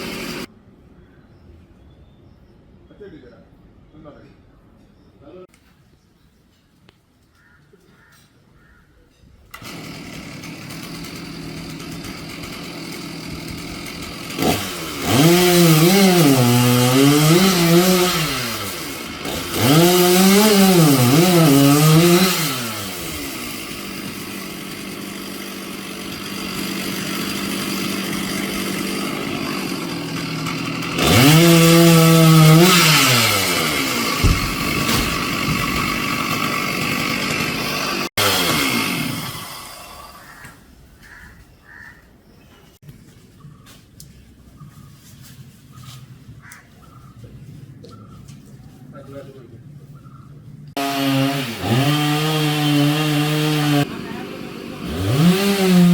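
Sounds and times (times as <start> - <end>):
chainsaw revving: 0.0 - 0.5, 9.5 - 40.4, 50.7 - 55.9.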